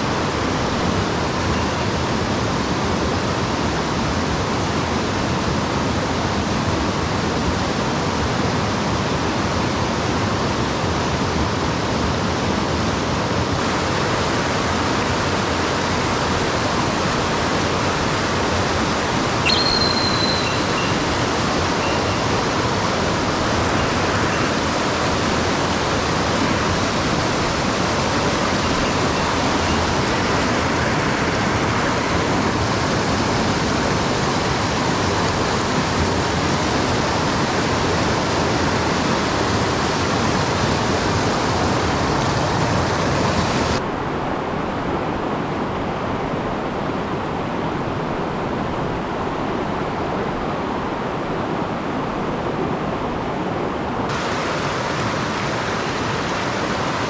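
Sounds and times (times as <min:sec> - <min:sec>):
sharp high-pitched sound: 0:19.5 - 0:21.5
mountain stream rushing: 0:19.8 - 0:57.0.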